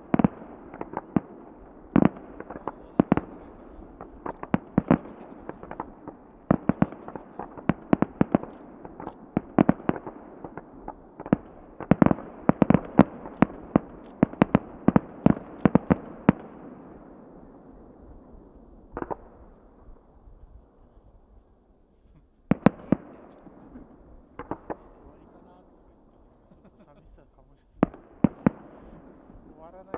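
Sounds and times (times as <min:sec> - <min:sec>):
fireworks bangs: 0:00.0 - 0:20.1, 0:22.1 - 0:29.9.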